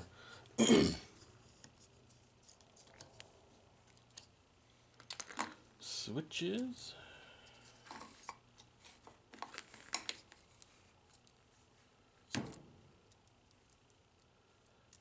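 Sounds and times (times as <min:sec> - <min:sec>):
small parts clicking and clinking: 0:04.9 - 0:05.6, 0:13.0 - 0:15.0.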